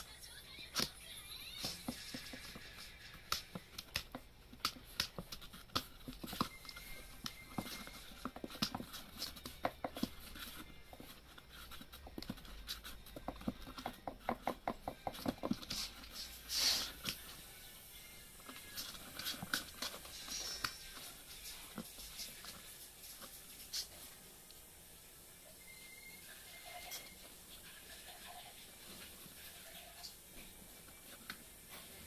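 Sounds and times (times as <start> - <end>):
claws scratching on cardboard: 1.5 - 17.4, 18.3 - 24.2.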